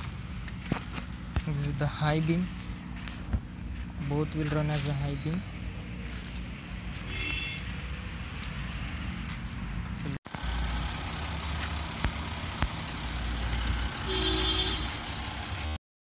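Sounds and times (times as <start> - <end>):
diesel engine idling: 0.0 - 15.8
vehicle horn toot: 7.0 - 7.7, 14.0 - 15.0.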